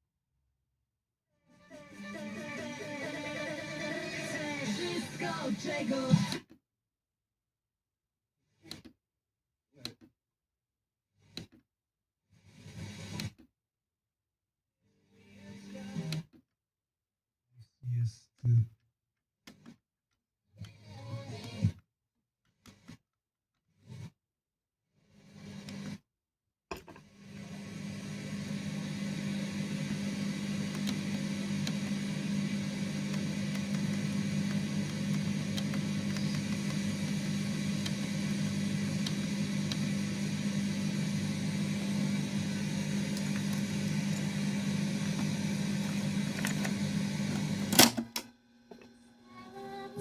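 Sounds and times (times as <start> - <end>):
radio-cassette player humming with hiss: 1.9 - 6.4, 27.4 - 50.0.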